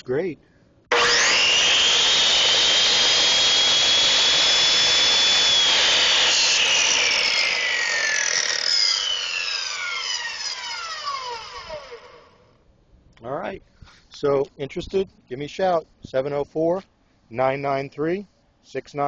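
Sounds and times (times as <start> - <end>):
miter saw high whine: 0.9 - 12.5
saw blade spinning down: 0.9 - 12.5.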